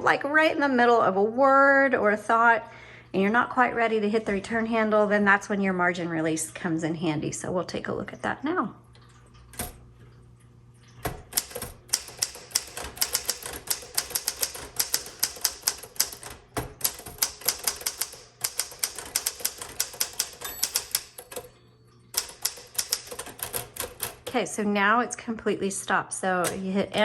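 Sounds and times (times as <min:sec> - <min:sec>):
manual typewriter typing: 0:09.5 - 0:09.8, 0:11.0 - 0:24.4.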